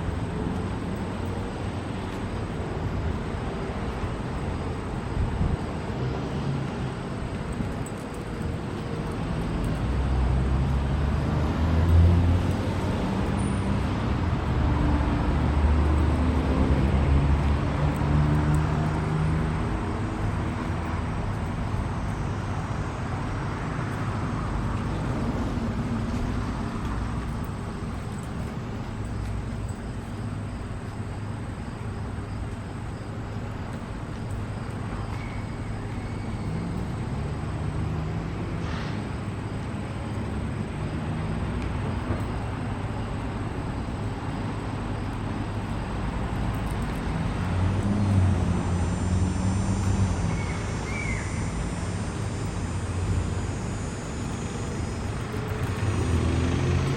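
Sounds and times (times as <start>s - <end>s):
traffic noise: 0.0s - 56.9s.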